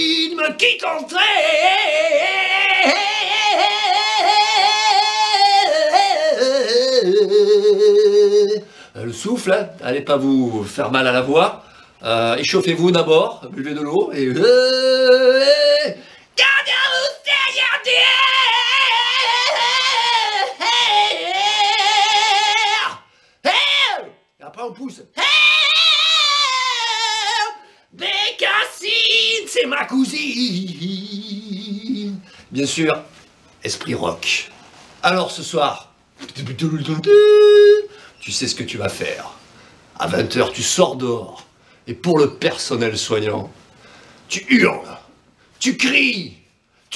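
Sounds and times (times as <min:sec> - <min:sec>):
man singing hard rock: 0:00.0 - 0:08.7, 0:14.1 - 0:24.1, 0:25.2 - 0:32.3.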